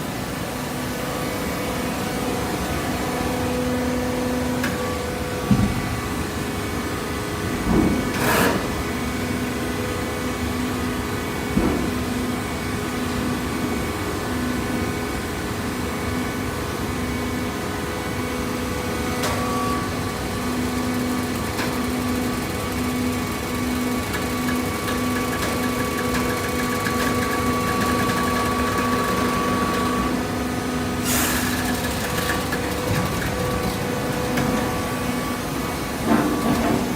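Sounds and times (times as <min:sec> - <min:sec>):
baler machine humming: 0:18.4 - 0:36.1.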